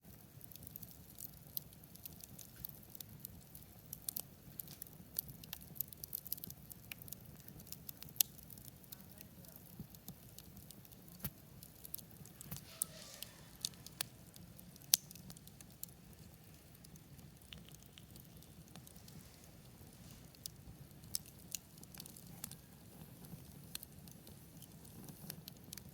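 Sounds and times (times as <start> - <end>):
campfire crackling: 0.0 - 25.9
soft hiss: 7.0 - 25.8
faint low rumble: 11.4 - 23.9.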